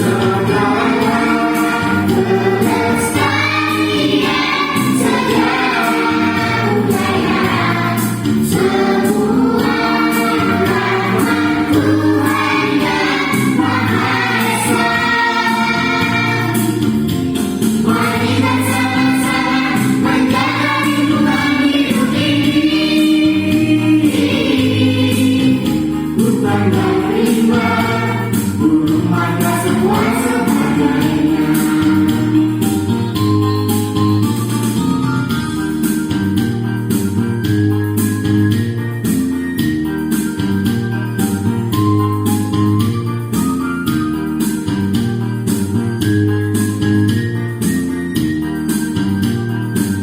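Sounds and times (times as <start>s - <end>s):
group of voices singing: 0.0s - 32.8s
percussion beat: 0.0s - 50.0s.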